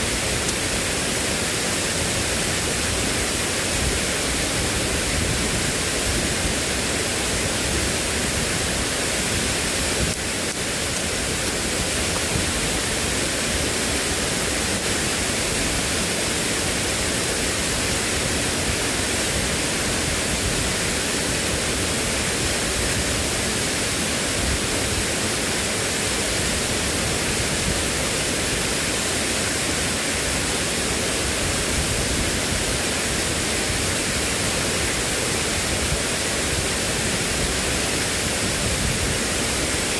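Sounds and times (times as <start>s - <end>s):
water rushing: 0.0s - 39.9s.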